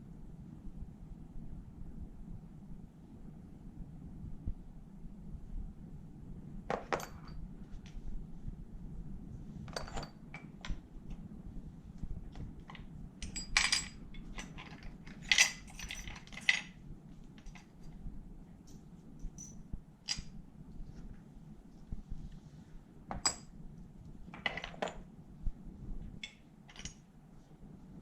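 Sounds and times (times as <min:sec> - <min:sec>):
low hum: 0:00.0 - 0:28.0
metal parts clinking: 0:09.7 - 0:10.7, 0:12.6 - 0:16.8, 0:26.2 - 0:27.0.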